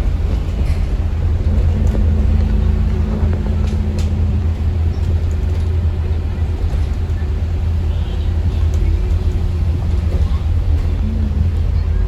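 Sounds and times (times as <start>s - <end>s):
bus engine drone: 0.0s - 12.0s
humming tone: 1.3s - 5.6s.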